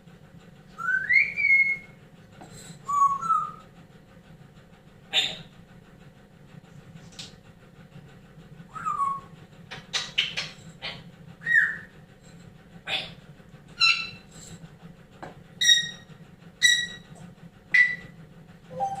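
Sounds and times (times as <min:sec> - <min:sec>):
parrot calls and whistles: 0:00.8 - 0:02.0, 0:02.8 - 0:03.6, 0:08.7 - 0:09.3, 0:09.9 - 0:11.9, 0:13.8 - 0:14.3, 0:15.6 - 0:17.1, 0:17.7 - 0:18.1.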